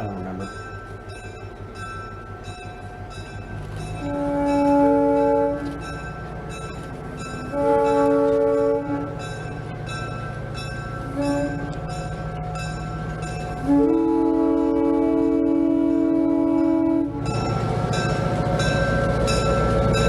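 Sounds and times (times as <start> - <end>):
locomotive engine running: 0.0 - 20.0
locomotive air horn blasts: 4.0 - 6.2, 7.4 - 9.5, 10.9 - 12.2, 13.5 - 20.0.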